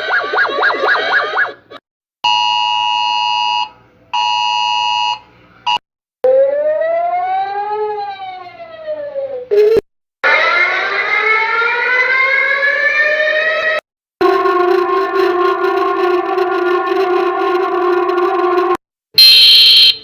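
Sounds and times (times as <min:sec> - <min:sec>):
fast warbling siren: 0:06.2 - 0:20.0
rising and falling siren wail: 0:06.2 - 0:20.0
long two-tone beeps: 0:19.2 - 0:20.0.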